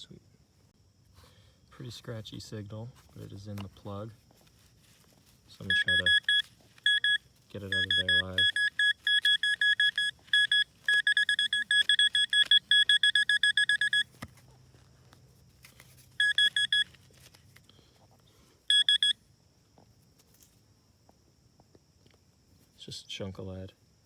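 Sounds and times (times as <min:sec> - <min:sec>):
metal detector rapid beeping: 0:05.6 - 0:14.1, 0:16.2 - 0:17.0, 0:18.7 - 0:19.2.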